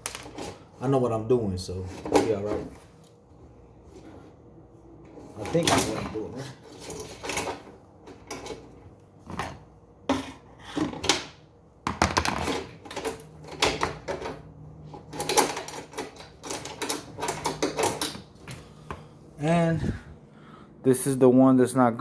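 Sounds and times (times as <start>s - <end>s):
metal and plastic parts rattling: 0.0s - 0.6s, 5.4s - 8.7s, 12.0s - 18.2s.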